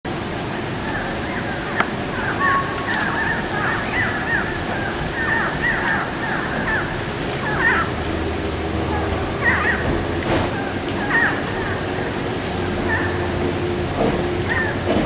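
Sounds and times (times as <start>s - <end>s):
steady rushing noise: 0.4s - 9.9s
birds chirping: 0.4s - 12.1s.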